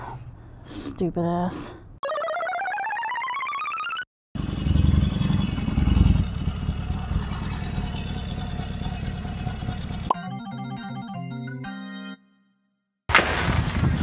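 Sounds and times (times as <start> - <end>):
motorcycle engine running: 4.4 - 10.1.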